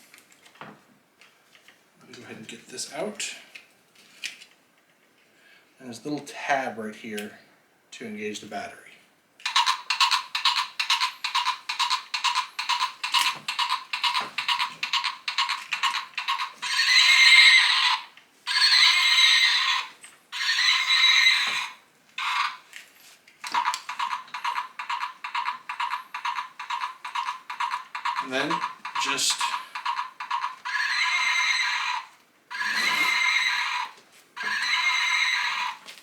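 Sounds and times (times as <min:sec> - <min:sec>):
recorded hoofbeats from speaker: 0:09.5 - 0:22.6, 0:23.4 - 0:35.8
recorded horse whinnies: 0:13.8 - 0:22.6, 0:23.5 - 0:35.8.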